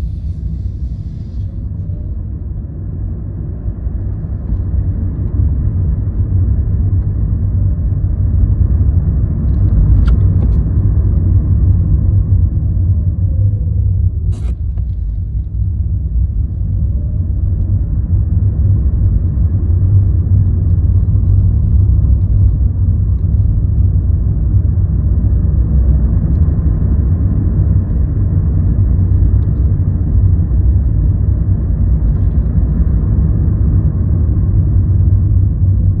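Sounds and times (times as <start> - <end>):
faint gliding whine: 0.0 - 4.6
car road rumble: 0.0 - 36.0.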